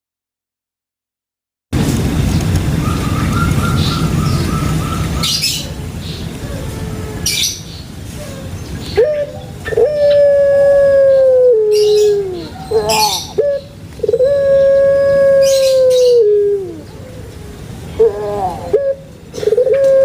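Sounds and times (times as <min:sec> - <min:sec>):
dove cooing: 0:08.2 - 0:20.0.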